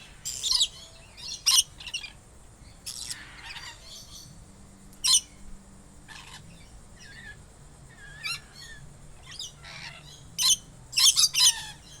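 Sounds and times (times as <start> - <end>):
parrot squawking and chirping: 0.2 - 2.2, 9.3 - 11.8.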